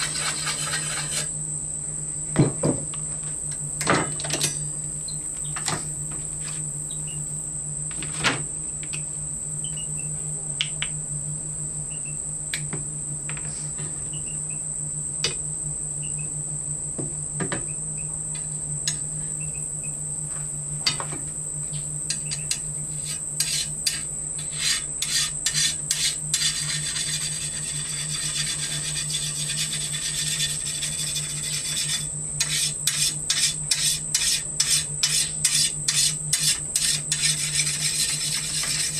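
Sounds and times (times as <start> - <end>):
high insect drone: 21.3 - 38.9
sharpening stone scraping blade: 22.1 - 38.9.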